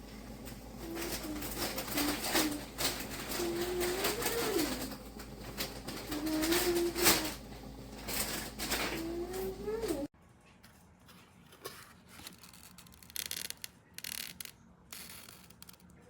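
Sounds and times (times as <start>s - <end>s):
bird cooing: 0.8s - 4.9s, 5.9s - 7.4s, 8.6s - 10.1s.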